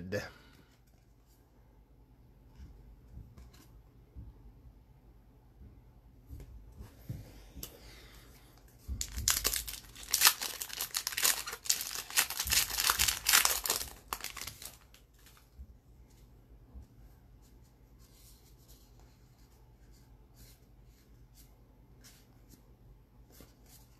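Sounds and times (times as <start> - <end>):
wrapper tearing and crinkling: 9.0 - 15.4.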